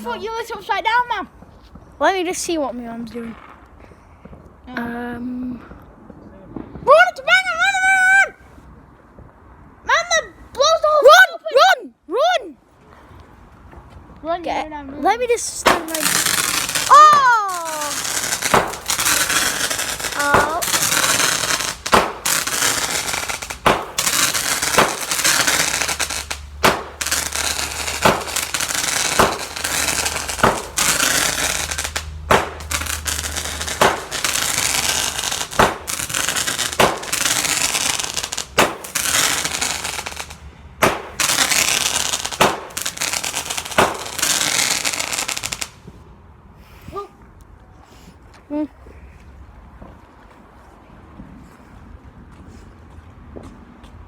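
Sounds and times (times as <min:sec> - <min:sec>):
firework bangs: 0:15.3 - 0:46.0
firework crackling and hissing: 0:15.3 - 0:46.0.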